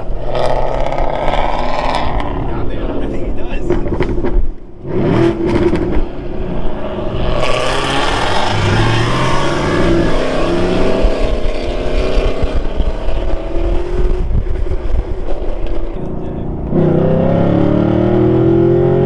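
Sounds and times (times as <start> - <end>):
car engine revving: 0.0 - 19.0
exhaust pops: 3.4 - 6.1.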